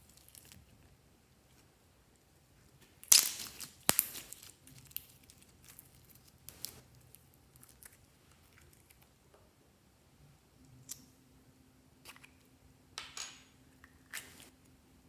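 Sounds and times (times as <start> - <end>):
sticky slime crinkling: 2.8 - 9.0
slime popping and crackling: 3.0 - 6.8.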